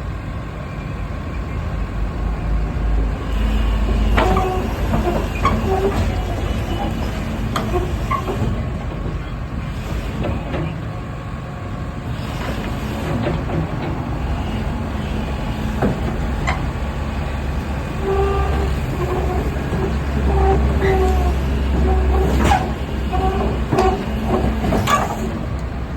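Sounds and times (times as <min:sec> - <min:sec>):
excavator diesel engine rumbling: 0:00.0 - 0:25.9.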